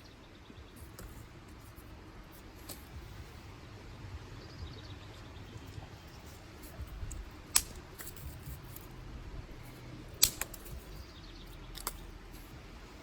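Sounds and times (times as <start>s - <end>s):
dry sticks snapping: 2.4s - 3.0s, 5.7s - 9.0s, 9.6s - 12.2s.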